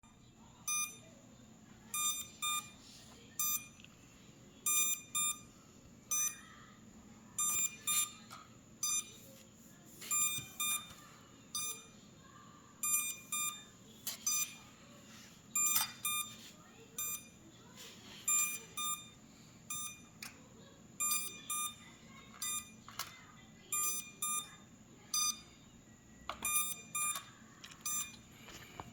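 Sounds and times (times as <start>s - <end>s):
drone warning beeps: 0.7s - 1.1s, 1.9s - 2.8s, 3.4s - 3.8s, 4.6s - 5.5s, 6.1s - 6.5s, 7.4s - 8.2s, 8.8s - 9.2s, 10.1s - 12.0s, 12.8s - 14.6s, 15.6s - 16.4s, 17.0s - 17.4s, 18.3s - 20.2s, 21.0s - 21.8s, 23.7s - 25.6s, 26.3s - 28.3s.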